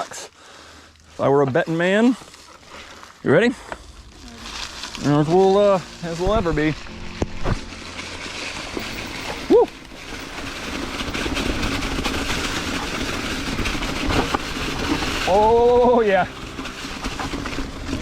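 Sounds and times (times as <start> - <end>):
bike tyre noise on rocks: 0.5 - 18.0
rushing wind: 3.6 - 15.5.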